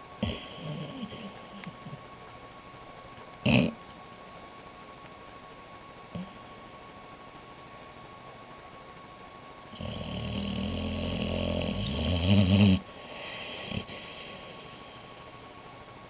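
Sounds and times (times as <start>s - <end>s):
dog snoring: 0.2s - 2.0s, 3.4s - 3.8s, 9.7s - 15.3s.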